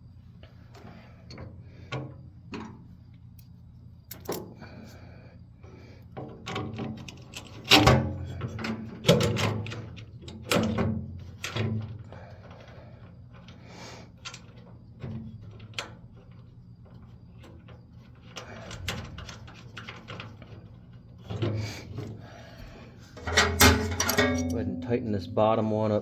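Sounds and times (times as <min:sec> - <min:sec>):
metal clicks and scrapes: 0:23.2 - 0:24.7.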